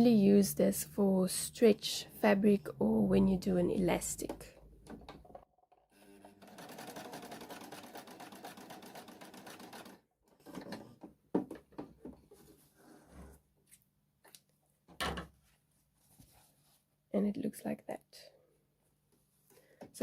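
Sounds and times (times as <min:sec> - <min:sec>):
sewing machine stitching: 0:04.8 - 0:10.8.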